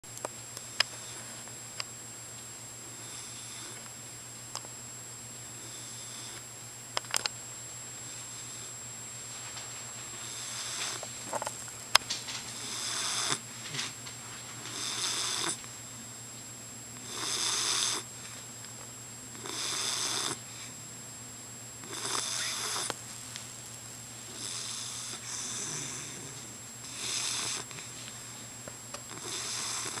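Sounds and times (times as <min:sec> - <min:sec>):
dog snoring: 0:02.8 - 0:03.8, 0:05.6 - 0:06.4, 0:08.0 - 0:08.8, 0:10.2 - 0:11.5, 0:12.5 - 0:13.9, 0:14.6 - 0:15.6, 0:17.0 - 0:18.1, 0:19.3 - 0:20.7, 0:21.8 - 0:23.0, 0:24.3 - 0:27.9, 0:29.1 - 0:30.0.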